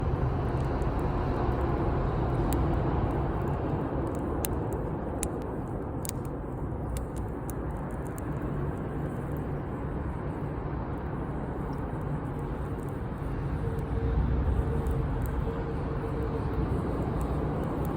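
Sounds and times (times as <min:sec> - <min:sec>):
burning wood popping and cracking: 0:00.0 - 0:09.6, 0:14.5 - 0:17.9
fire low rush: 0:06.8 - 0:17.9.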